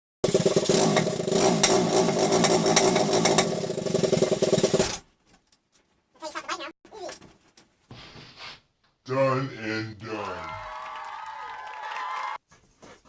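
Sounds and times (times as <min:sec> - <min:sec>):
dirt bike engine running: 0:00.2 - 0:05.0.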